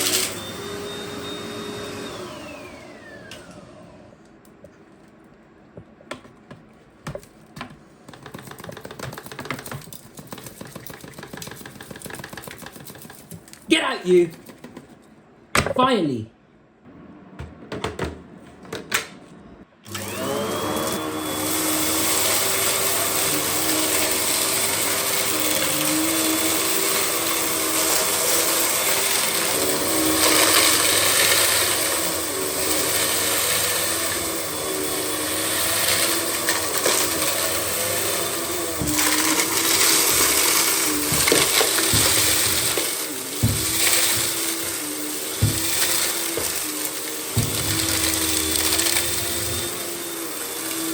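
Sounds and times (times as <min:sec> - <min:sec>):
vacuum cleaner motor whine: 0:00.0 - 0:04.5, 0:19.8 - 0:50.9.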